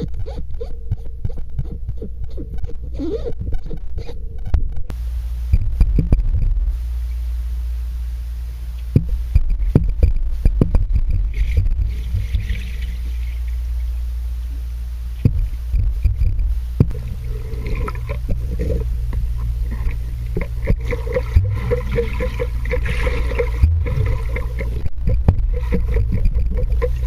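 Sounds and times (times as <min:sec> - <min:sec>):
muffled underwater rumble: 0:00.0 - 0:27.0
underwater knocks and scrapes: 0:08.8 - 0:14.0, 0:15.2 - 0:27.0.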